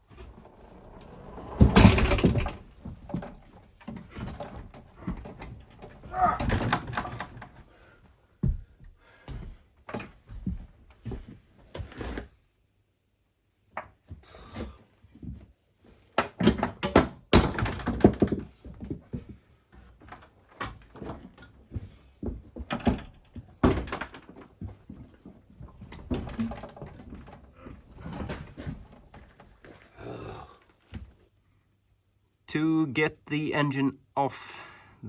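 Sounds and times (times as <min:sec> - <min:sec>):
tools and metal parts clattering: 0:00.1 - 0:07.6, 0:16.4 - 0:19.0, 0:22.6 - 0:29.9.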